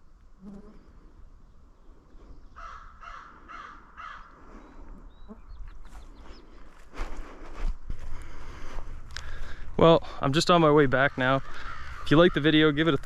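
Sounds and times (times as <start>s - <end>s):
crow cawing: 2.6s - 4.6s, 11.0s - 13.0s.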